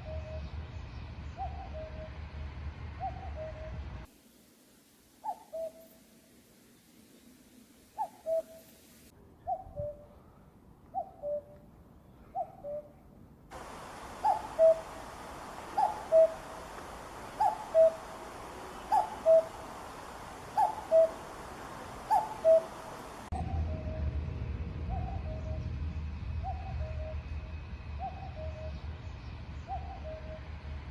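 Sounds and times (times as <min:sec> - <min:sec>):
hiss: 0:04.1 - 0:09.1, 0:13.5 - 0:23.3
cuckoo calling: 0:05.2 - 0:06.0, 0:08.0 - 0:08.7, 0:12.4 - 0:23.4.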